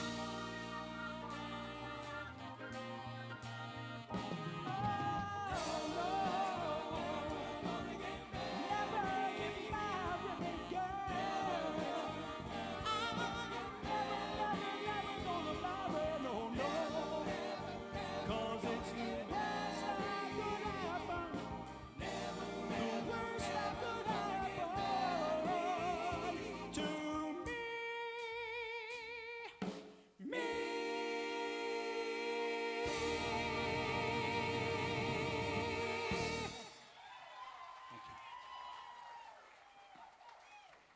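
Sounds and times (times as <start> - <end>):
vocal harmony singing: 0.0 - 3.2, 4.0 - 29.4, 30.2 - 36.8
drums and backing instruments: 0.0 - 30.5, 32.6 - 37.2.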